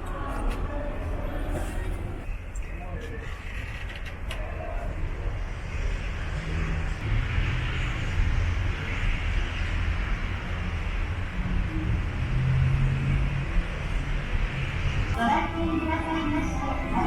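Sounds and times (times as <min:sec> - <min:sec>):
low city rumble: 0:00.0 - 0:17.0.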